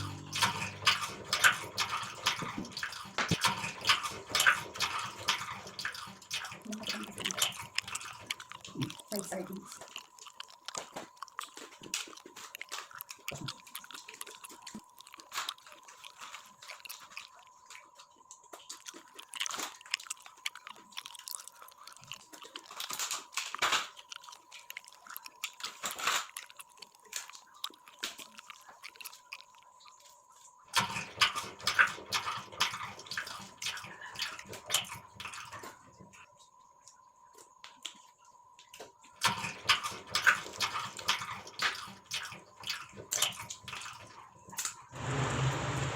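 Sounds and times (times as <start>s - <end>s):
person chewing and biting: 0.0s - 17.5s, 18.5s - 29.6s.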